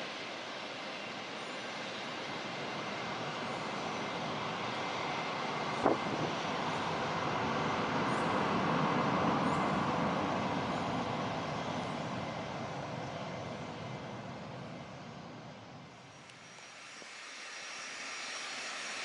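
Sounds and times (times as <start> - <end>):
jet engines passing by: 0.0 - 19.0.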